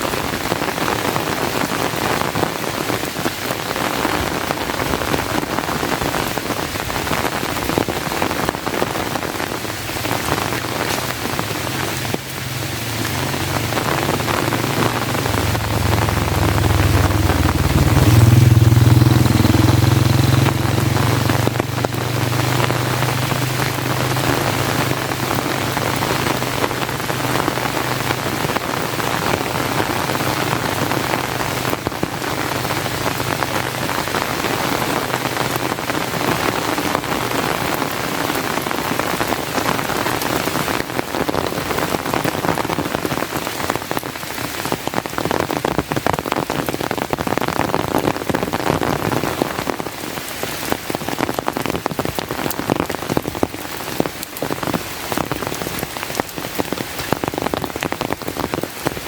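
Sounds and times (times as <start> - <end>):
raindrops ticking: 0.0 - 59.0
steady rain falling: 0.0 - 59.0.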